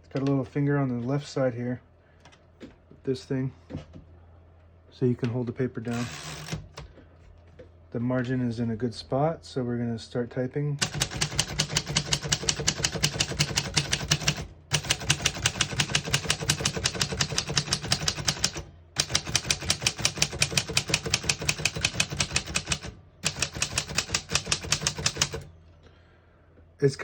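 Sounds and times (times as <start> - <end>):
manual typewriter keystrokes: 10.8 - 25.5.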